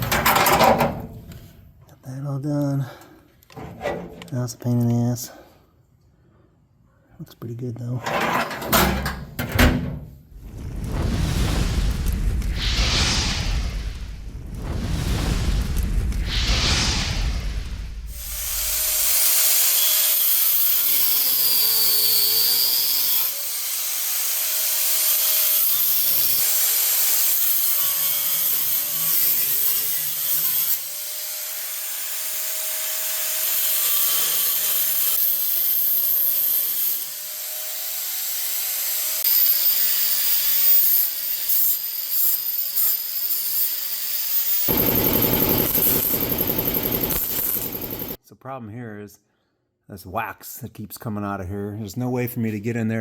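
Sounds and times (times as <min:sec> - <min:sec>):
power tool abrading metal: 0:00.0 - 0:01.5, 0:08.1 - 0:10.2, 0:18.2 - 0:48.2.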